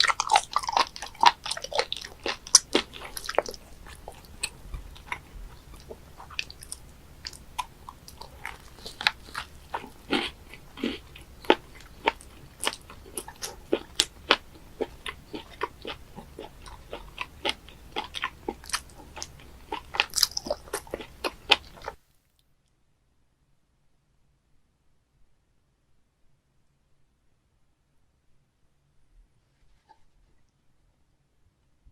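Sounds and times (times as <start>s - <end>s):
wet chewing clicks and crunches: 0.0s - 22.0s.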